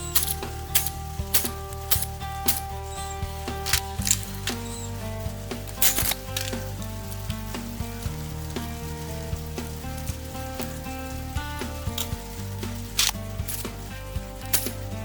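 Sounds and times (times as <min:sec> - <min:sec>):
sharp clicks: 0:00.0 - 0:07.3, 0:11.5 - 0:15.0
instrumental background music: 0:00.0 - 0:15.0.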